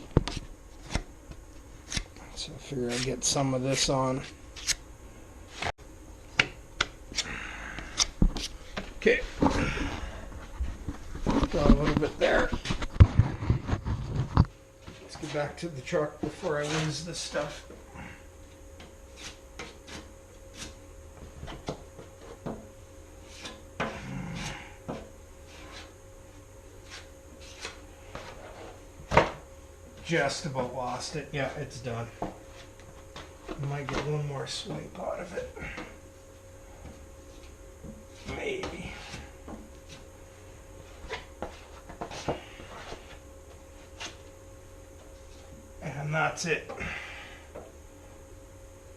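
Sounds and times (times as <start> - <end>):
steady low hum: 0.0 - 48.9.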